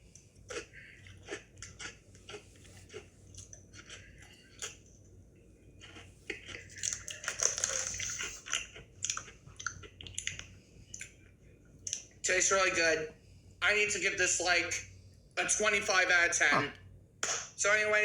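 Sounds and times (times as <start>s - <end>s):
cookie crunching while chewing: 0.2s - 11.2s.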